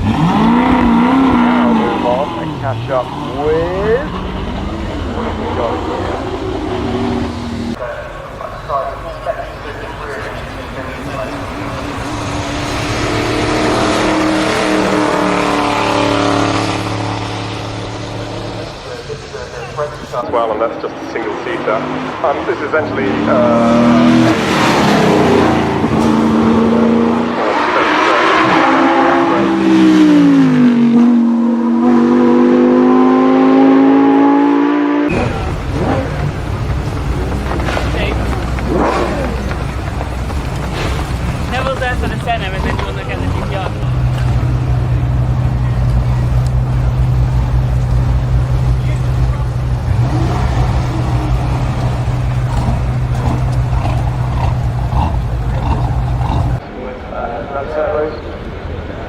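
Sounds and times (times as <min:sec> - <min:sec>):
car engine idling: 0:35.1 - 0:56.6.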